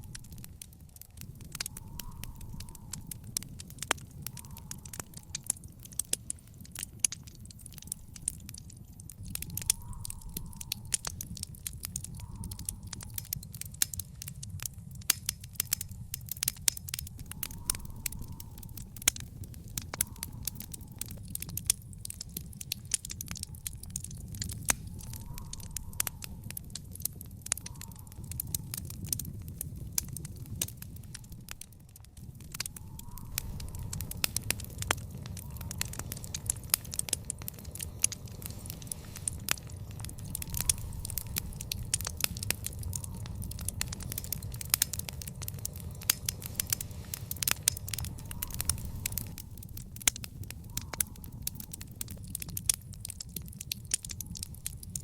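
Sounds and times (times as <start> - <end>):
low rumble of flame: 0.0 - 55.0
wood fire popping and snapping: 0.0 - 55.0.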